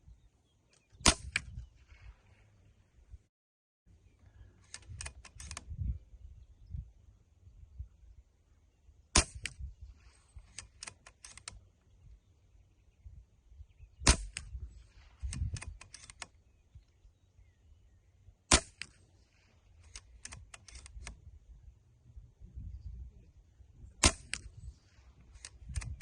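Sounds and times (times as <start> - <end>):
rifle action clicks: 0.7 - 1.6, 4.6 - 5.7, 10.3 - 11.6, 14.0 - 14.6, 15.2 - 16.4, 18.5 - 19.1, 19.8 - 21.2, 24.0 - 24.6, 25.2 - 26.0
air rifle shot crack: 1.0 - 2.1, 9.1 - 9.7, 14.0 - 14.7, 18.5 - 19.0, 24.0 - 24.7.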